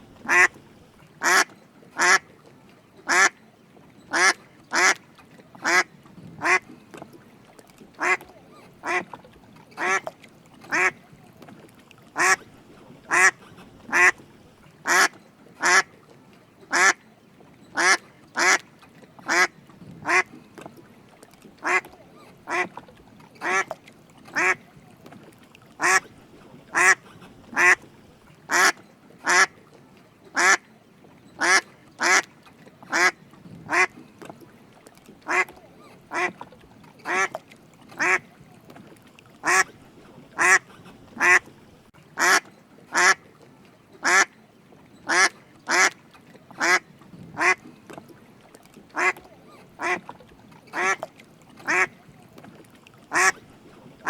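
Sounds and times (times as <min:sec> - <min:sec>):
duck quacking: 0:00.2 - 0:00.6, 0:01.2 - 0:02.2, 0:03.1 - 0:03.3, 0:04.1 - 0:05.0, 0:05.6 - 0:06.6, 0:08.0 - 0:08.2, 0:08.8 - 0:09.1, 0:09.8 - 0:10.0, 0:10.7 - 0:11.0, 0:12.2 - 0:12.4, 0:13.1 - 0:14.2, 0:14.8 - 0:15.9, 0:17.8 - 0:18.6, 0:19.3 - 0:20.3, 0:21.6 - 0:21.9, 0:22.5 - 0:22.8, 0:24.4 - 0:24.6, 0:25.8 - 0:26.1, 0:26.7 - 0:27.8, 0:28.5 - 0:29.5, 0:31.4 - 0:32.2, 0:32.9 - 0:33.9, 0:35.3 - 0:35.5, 0:36.1 - 0:36.4, 0:37.0 - 0:37.4, 0:38.0 - 0:38.2, 0:39.4 - 0:39.7, 0:40.4 - 0:41.5, 0:42.2 - 0:43.2, 0:44.0 - 0:44.3, 0:45.1 - 0:46.0, 0:46.6 - 0:46.8, 0:47.4 - 0:47.6, 0:49.0 - 0:49.2, 0:49.8 - 0:50.0, 0:50.8 - 0:51.0, 0:51.7 - 0:51.9, 0:53.1 - 0:53.4.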